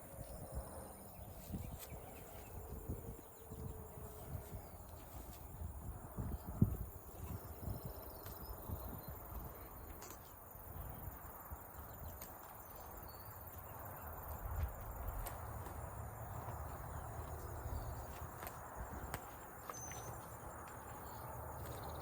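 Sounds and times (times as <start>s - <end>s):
faint bird chirps: 19.7s - 20.2s.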